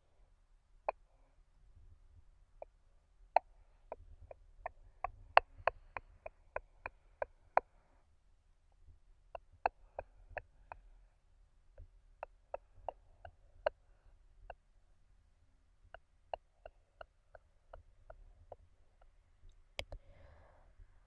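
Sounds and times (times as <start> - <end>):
mouth clicks: 3.4 - 7.7, 12.2 - 13.8.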